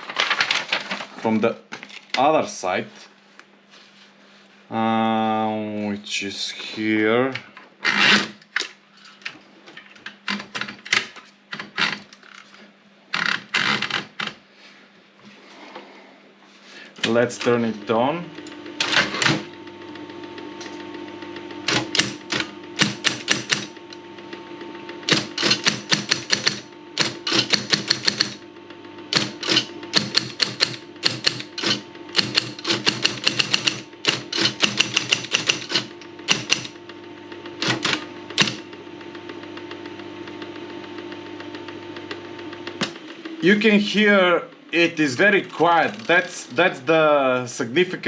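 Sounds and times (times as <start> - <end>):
typewriter motor hum: 7.8 - 8.4, 10.2 - 12.5, 13.1 - 14.4, 17.0 - 47.2
typewriter key strikes: 25.1 - 28.4, 29.2 - 36.7.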